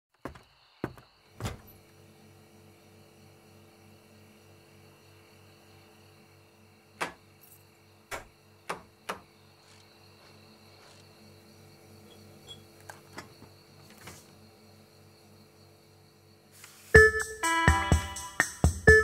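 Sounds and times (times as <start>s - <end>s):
sharp knocks: 7.0s - 7.2s, 8.1s - 9.3s.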